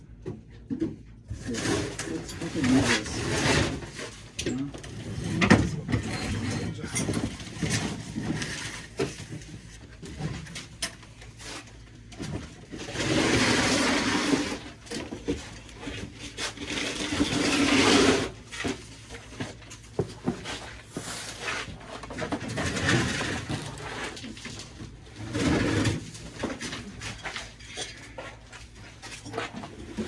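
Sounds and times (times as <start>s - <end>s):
knocks and clunks of household items: 0.2s - 30.0s
heavy object dragged across floor: 1.4s - 4.3s, 12.8s - 14.6s.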